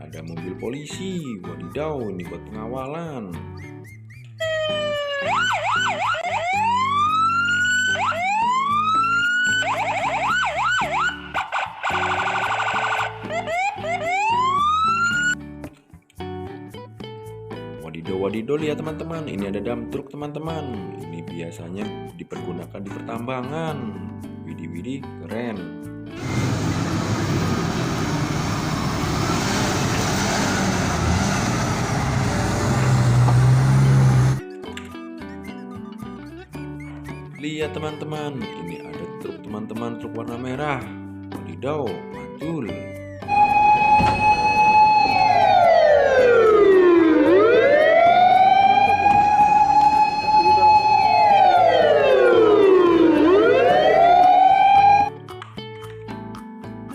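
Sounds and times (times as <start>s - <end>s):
electronic police siren: 4.4s - 15.4s, 43.2s - 55.1s
truck engine running: 26.2s - 34.4s.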